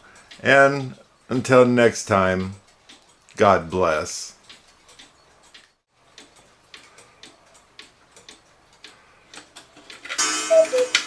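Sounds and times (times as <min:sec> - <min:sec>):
clock ticking: 0:00.0 - 0:11.0
cuckoo call: 0:10.2 - 0:11.0
musical tones ringing: 0:10.2 - 0:11.0.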